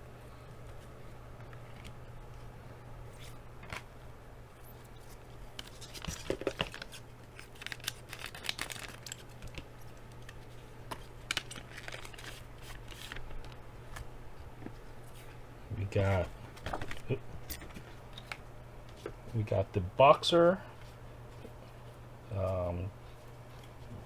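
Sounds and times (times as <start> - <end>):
low electrical hum: 0.0 - 24.0
foil wrapper tearing and crinkling: 5.6 - 10.4, 11.2 - 13.5.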